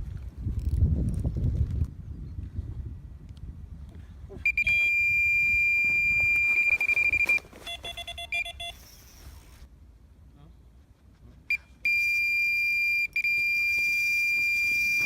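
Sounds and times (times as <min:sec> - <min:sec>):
short electronic beeps: 0:04.5 - 0:09.2, 0:11.5 - 0:15.0.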